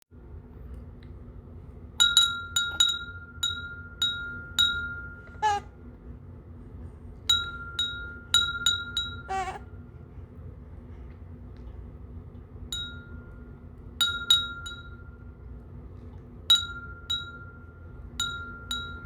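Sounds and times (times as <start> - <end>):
small bell ringing: 2.0 - 5.6, 7.3 - 9.6, 12.7 - 15.4, 16.5 - 19.0
baby cooing: 5.4 - 5.7, 9.3 - 9.7.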